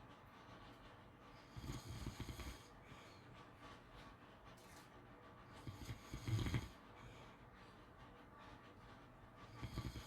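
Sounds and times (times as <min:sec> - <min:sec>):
dog breathing: 0:00.0 - 0:10.0
dog snoring: 0:01.5 - 0:02.8, 0:05.6 - 0:06.8, 0:09.5 - 0:10.0.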